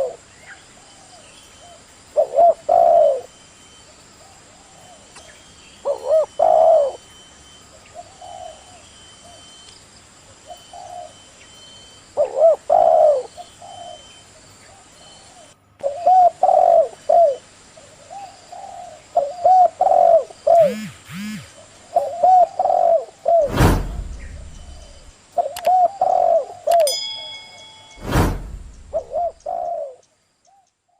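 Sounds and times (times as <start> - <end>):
dove cooing: 2.2 - 3.3, 5.9 - 7.0, 8.0 - 9.4, 10.5 - 11.2, 12.2 - 14.1, 15.4 - 17.4, 18.1 - 23.5, 24.8 - 26.9, 28.9 - 30.0.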